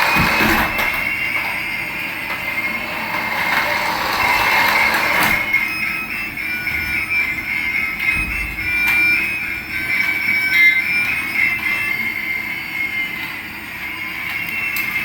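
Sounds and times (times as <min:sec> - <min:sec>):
toy motor and gears whirring: 0:00.0 - 0:06.6.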